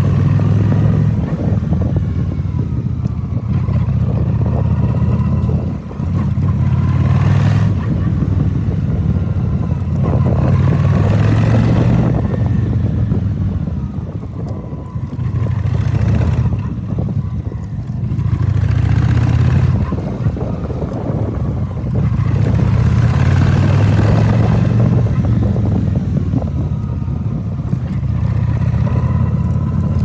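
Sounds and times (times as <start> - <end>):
motorcycle engine running: 0.0 - 30.0
wind on microphone: 0.0 - 30.0.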